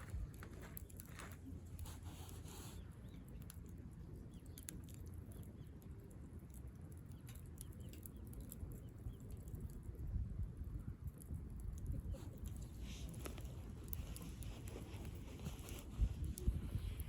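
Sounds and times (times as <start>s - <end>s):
wood fire crackling and popping: 10.8s - 17.0s.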